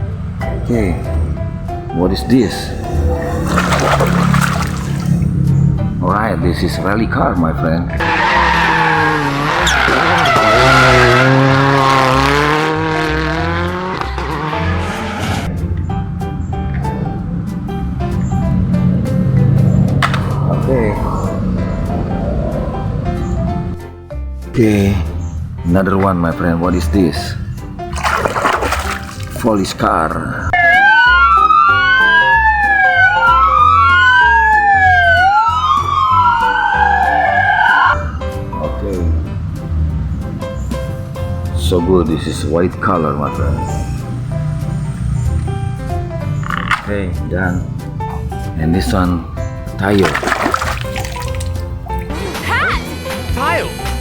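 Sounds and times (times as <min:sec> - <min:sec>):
police siren wailing: 0:08.0 - 0:11.8, 0:30.5 - 0:38.0
racing car engine revving: 0:08.0 - 0:23.8.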